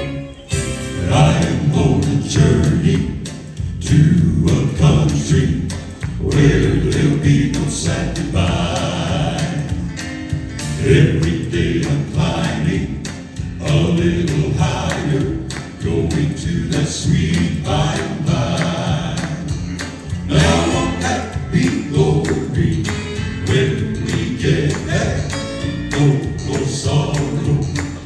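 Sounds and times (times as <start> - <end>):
male vocal group singing in harmony: 0.8 - 28.0.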